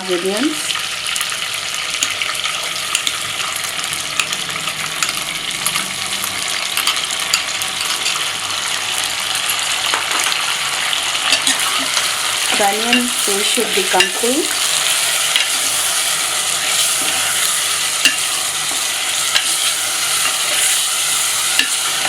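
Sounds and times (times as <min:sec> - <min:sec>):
paste sizzling in hot oil: 0:00.2 - 0:22.0.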